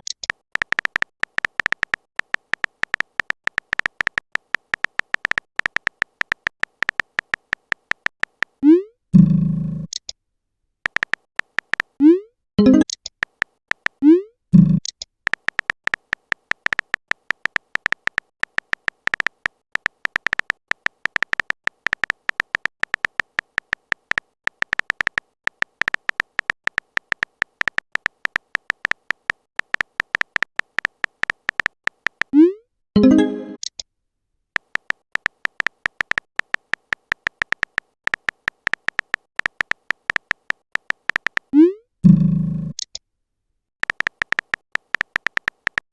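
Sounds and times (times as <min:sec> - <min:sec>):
electronic typing clicks: 0:00.0 - 0:08.8, 0:10.8 - 0:33.8, 0:34.6 - 0:43.0, 0:43.8 - 0:45.9
rising message pops: 0:32.4 - 0:33.6.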